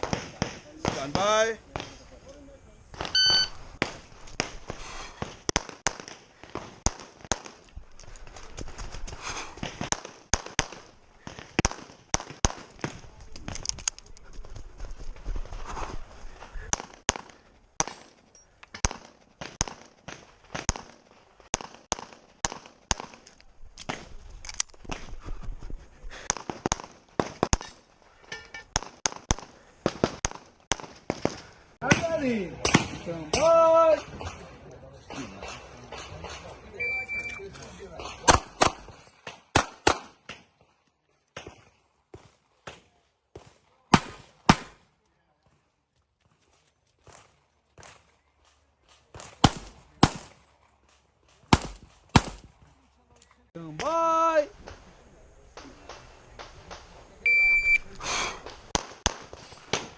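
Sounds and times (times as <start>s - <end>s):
electronic shot timer beep: 3.1s - 3.5s, 57.3s - 57.8s
handgun shots in quick pairs: 38.2s - 40.3s.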